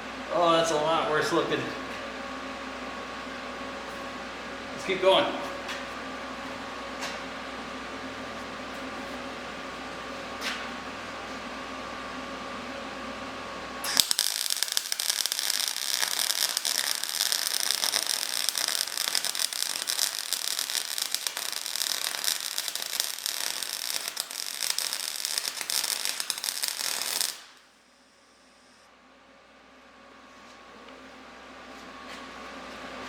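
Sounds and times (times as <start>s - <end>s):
welder arc crackling: 13.8s - 27.7s.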